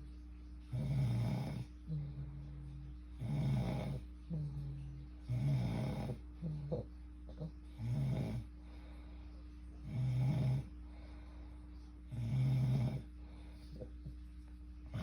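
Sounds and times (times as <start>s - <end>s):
steady low hum: 0.0s - 15.0s
person snoring: 3.2s - 4.0s, 7.8s - 8.5s, 9.8s - 10.7s, 12.1s - 13.1s.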